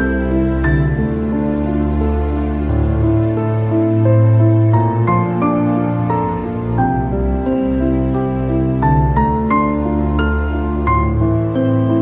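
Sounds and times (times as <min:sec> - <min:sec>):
calm new-age music: 0:00.0 - 0:12.0.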